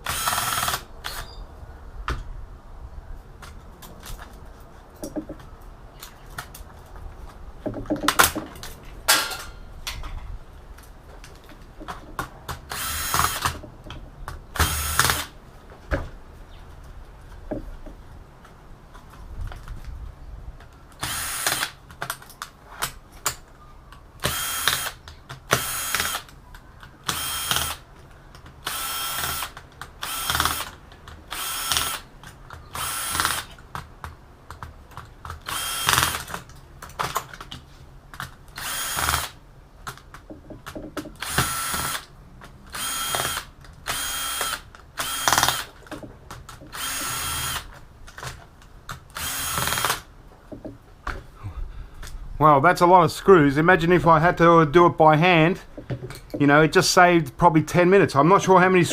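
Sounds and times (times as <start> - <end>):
power drill driving screws: 0.0 - 1.3, 12.6 - 13.6, 14.6 - 15.3, 21.0 - 21.8, 24.2 - 26.3, 27.0 - 27.8, 28.6 - 32.1, 32.7 - 33.6, 35.4 - 36.4, 38.5 - 39.4, 41.2 - 42.1, 42.7 - 45.8, 46.6 - 47.7, 49.1 - 50.1.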